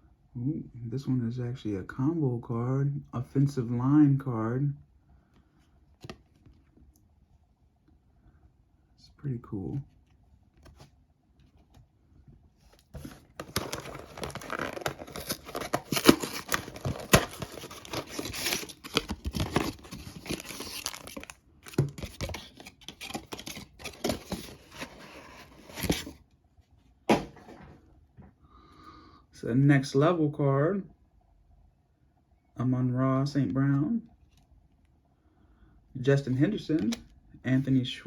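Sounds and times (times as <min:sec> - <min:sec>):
wrapper tearing and crinkling: 0:13.0 - 0:24.9.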